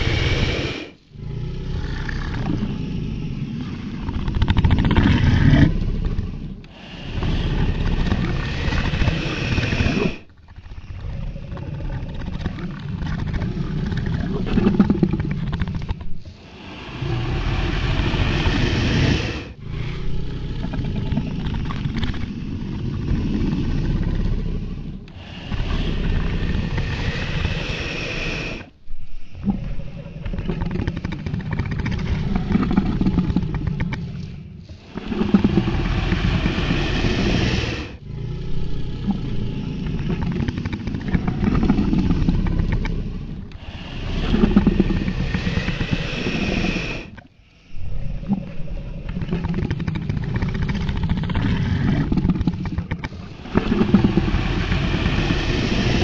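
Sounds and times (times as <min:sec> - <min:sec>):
dragon roars and growls: 0:00.0 - 0:04.0, 0:16.4 - 0:21.4, 0:34.8 - 0:47.1, 0:53.2 - 0:56.0.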